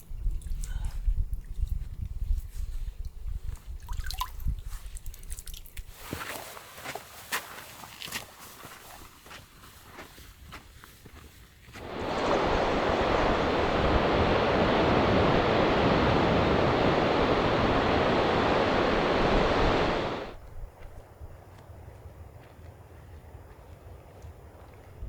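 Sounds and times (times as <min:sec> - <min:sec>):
faint footsteps on trail: 0:05.9 - 0:14.8, 0:20.4 - 0:25.0
ocean surf breaking: 0:11.8 - 0:20.4.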